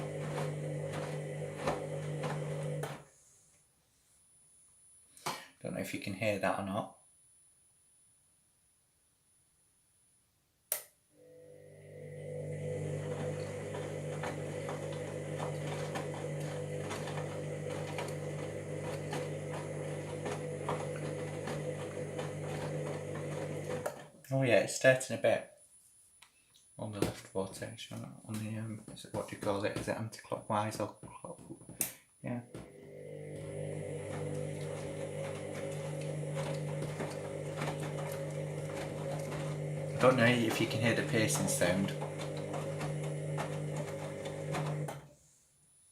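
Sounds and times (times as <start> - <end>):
washing machine motor hum: 0.0 - 3.0, 11.2 - 24.2, 32.5 - 45.2.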